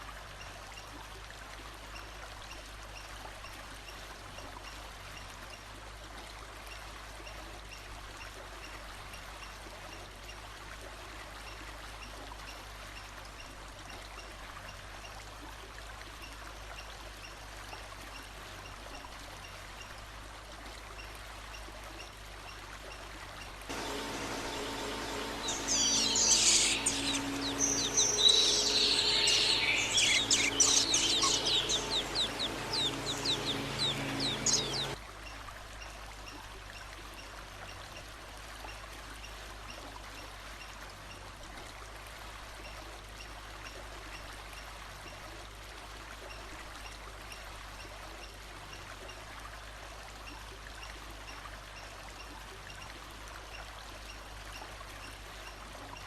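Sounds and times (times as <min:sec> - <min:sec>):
songbird chirping and trilling: 0:23.7 - 0:35.0
stream rushing: 0:23.7 - 0:35.0.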